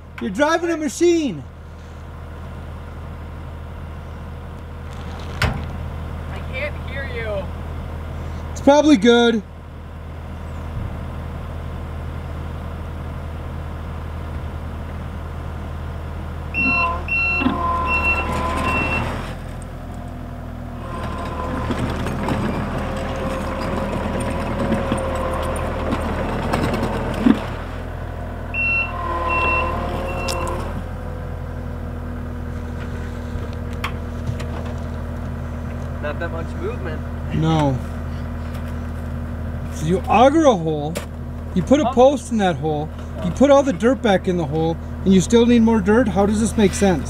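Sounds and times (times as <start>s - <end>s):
skid steer engine running: 0.0s - 47.0s
backup alarm beeping: 16.5s - 19.2s, 28.5s - 30.7s
machine whine: 16.5s - 19.2s.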